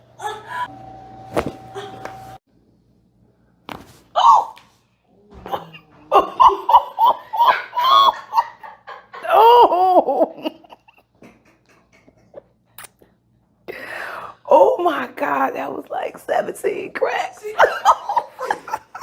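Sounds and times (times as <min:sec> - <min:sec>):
person crying out: 0:04.2 - 0:04.6, 0:09.2 - 0:10.2
person laughing in bursts: 0:05.5 - 0:12.4, 0:17.4 - 0:19.0.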